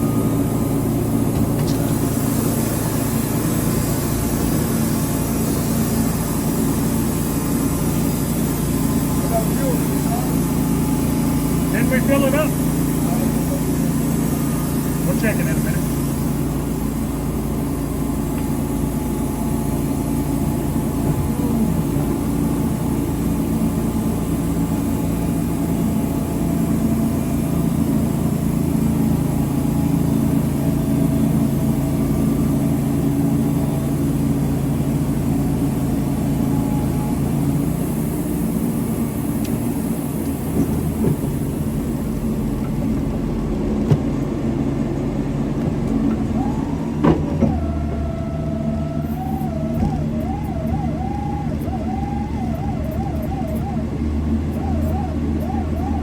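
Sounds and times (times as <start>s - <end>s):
engine running steadily: 0.0s - 56.0s.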